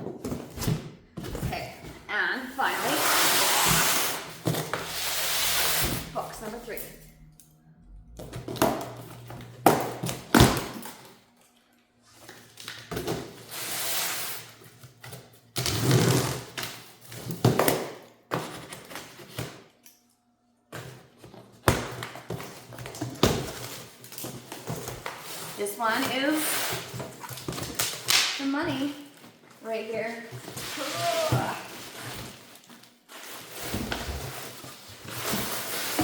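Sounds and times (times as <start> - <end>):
rustling cardboard and packing: 0.0 - 6.8, 20.7 - 36.0.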